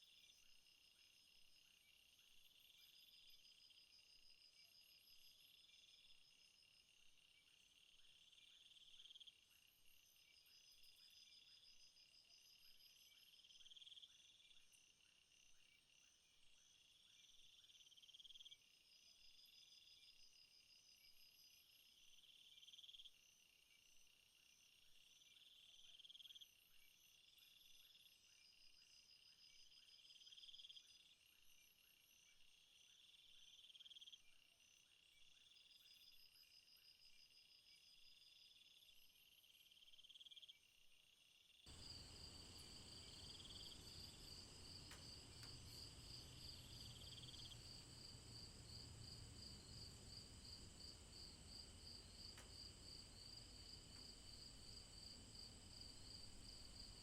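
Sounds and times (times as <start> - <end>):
crickets and insects trilling: 41.7 - 57.0
insect buzzing call: 41.7 - 57.0.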